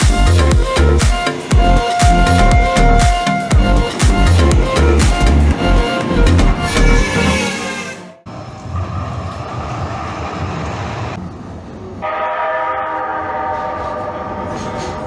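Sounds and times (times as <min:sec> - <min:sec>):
steady multi-tone chord: 0:00.0 - 0:08.2
light-rail train rumbling: 0:00.0 - 0:15.0.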